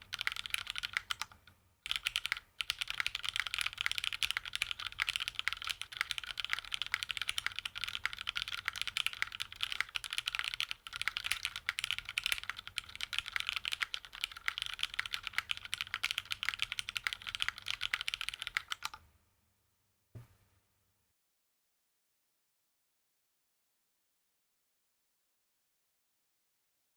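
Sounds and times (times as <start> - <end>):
fast typing on mechanical keyboard: 0.0 - 19.0.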